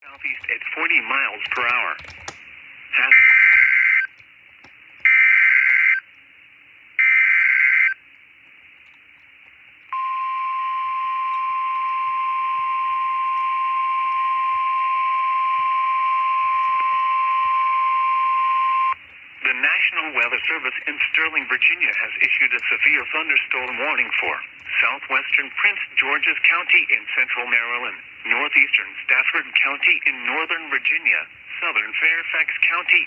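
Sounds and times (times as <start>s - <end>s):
steady warning alarm tone: 3.0s - 4.2s, 5.0s - 6.1s, 9.9s - 28.5s.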